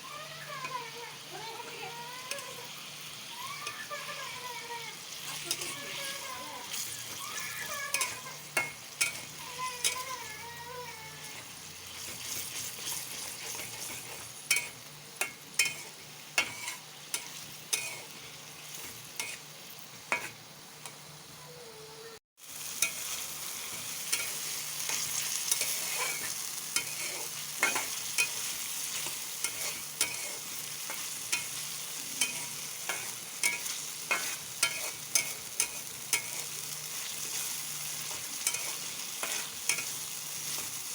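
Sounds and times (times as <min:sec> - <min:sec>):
food sizzling in oil: 0:00.0 - 0:40.9
spoon knocking and scraping pan: 0:11.2 - 0:19.4, 0:20.1 - 0:20.4, 0:23.7 - 0:31.6, 0:32.2 - 0:40.8.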